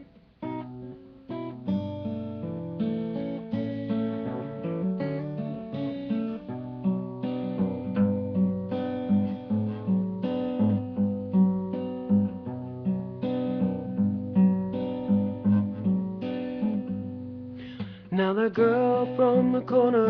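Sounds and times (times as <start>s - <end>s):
acoustic guitar strumming chords: 0.0s - 20.0s.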